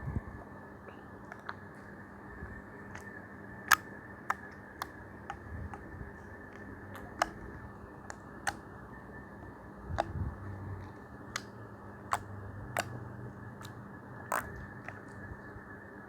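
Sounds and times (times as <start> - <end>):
slime clicking and popping: 3.7 - 8.7, 12.1 - 13.0, 13.6 - 15.2.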